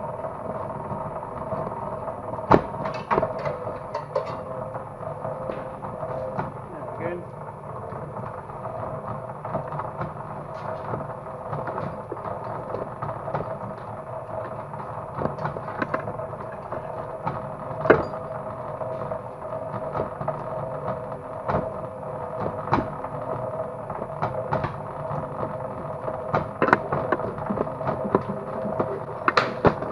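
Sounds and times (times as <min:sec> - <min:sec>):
machine motor hum: 0:00.0 - 0:29.9
clicks and knocks: 0:02.5 - 0:04.6, 0:26.3 - 0:29.9.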